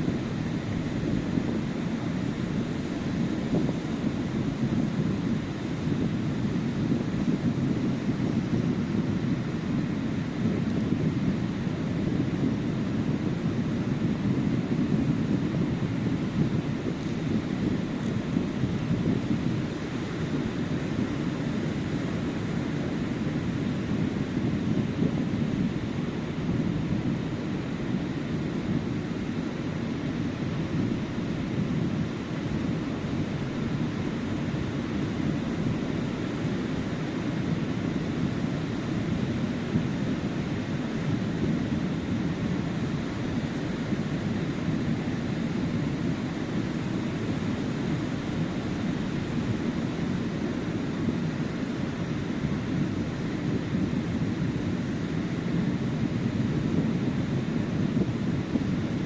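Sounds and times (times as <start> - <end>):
ocean surf on sandy beach: 0.0 - 59.0.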